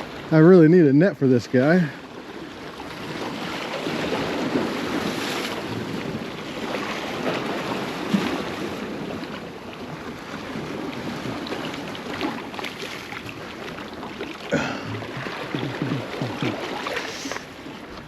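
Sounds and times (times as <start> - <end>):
surf washing against rocks: 1.3 - 18.0
wind on microphone: 14.6 - 18.0.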